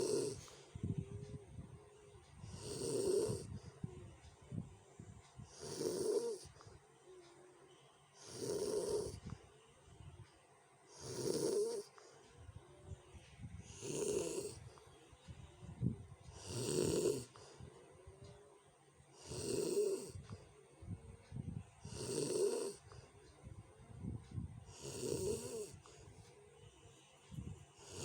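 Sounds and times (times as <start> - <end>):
person snoring harshly: 0.0 - 0.5, 2.5 - 3.5, 5.6 - 6.5, 8.2 - 9.2, 11.0 - 11.9, 13.7 - 14.6, 16.4 - 17.4, 19.2 - 20.2, 21.9 - 22.8, 24.7 - 25.8, 27.8 - 28.0.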